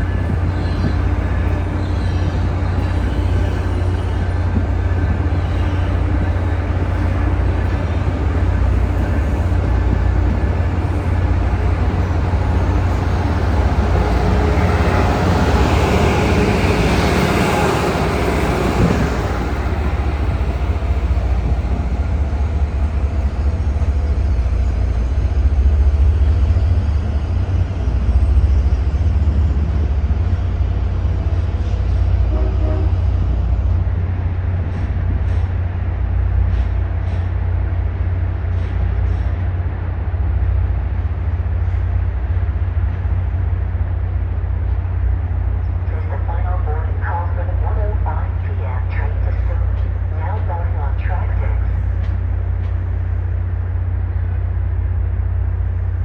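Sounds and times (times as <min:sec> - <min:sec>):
steady low rumble: 0:00.0 - 0:28.1
train running past: 0:00.0 - 0:56.0.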